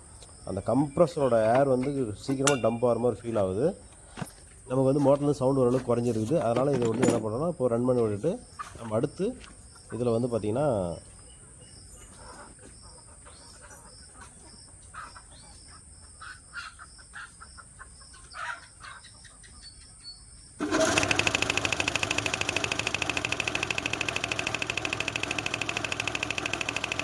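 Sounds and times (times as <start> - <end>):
crickets: 0.0 - 20.6
bird chirps: 16.2 - 20.6
air compressor pulsing: 20.6 - 27.0.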